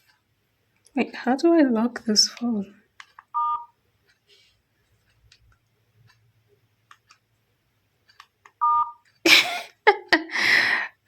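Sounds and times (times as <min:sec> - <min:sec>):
two-note dialling beep: 0:03.4 - 0:03.7, 0:08.6 - 0:09.0.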